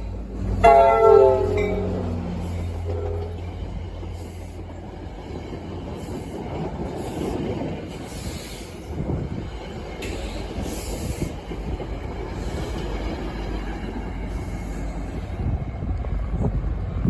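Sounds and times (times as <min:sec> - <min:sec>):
train rumbling past on rails: 0:00.0 - 0:17.0.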